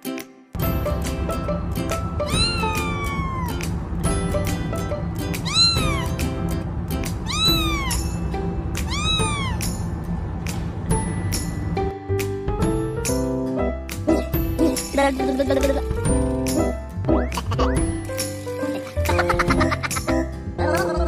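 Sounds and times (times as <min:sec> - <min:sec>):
background music with bass: 0:00.0 - 0:21.0
cat meowing: 0:02.2 - 0:03.6, 0:05.4 - 0:06.2, 0:07.2 - 0:08.0, 0:08.8 - 0:09.7.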